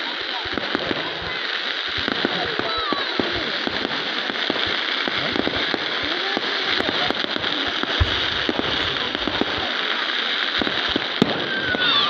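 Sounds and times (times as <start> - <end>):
fireworks popping and crackling: 0.0 - 12.0
steady hiss: 0.0 - 12.0
deep firework bang: 6.6 - 9.7.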